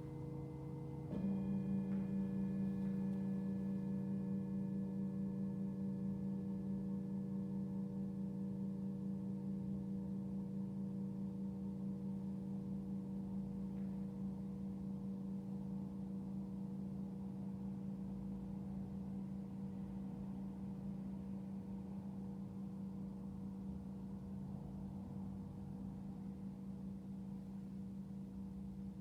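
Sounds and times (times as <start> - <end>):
singing bowl ringing: 0.0 - 16.9.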